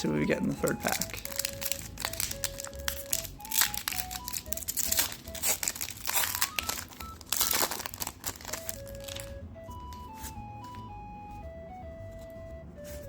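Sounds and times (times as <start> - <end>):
foil wrapper crinkling: 0.0 - 10.2
light background music: 0.0 - 13.0
wrapper tearing: 0.5 - 9.4.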